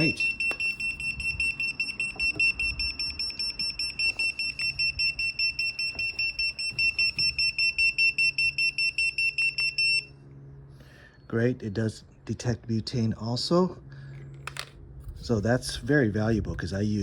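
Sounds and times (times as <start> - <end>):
shrill rapid alarm beeps: 0.0 - 10.3.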